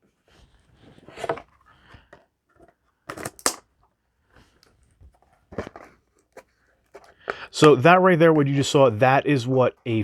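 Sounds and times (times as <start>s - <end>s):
cards snapping and rustling: 1.1s - 3.7s.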